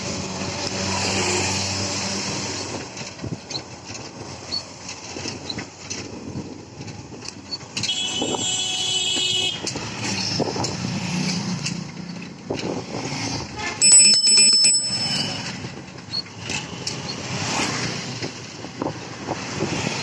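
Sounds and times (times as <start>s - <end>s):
vehicles passing: 0.0s - 20.0s
high-pitched vehicle horn: 7.8s - 9.6s, 13.6s - 15.4s.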